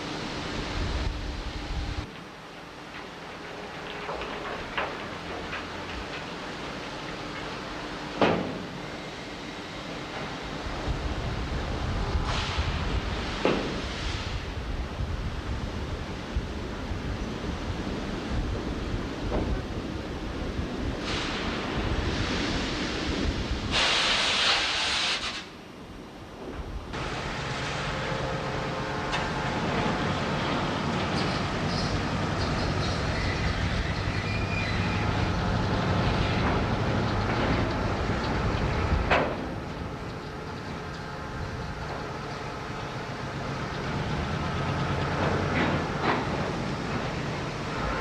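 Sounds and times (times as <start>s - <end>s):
loud hiss: 12.1s - 14.7s, 21.0s - 25.6s
industrial machinery rumble: 25.8s - 48.0s.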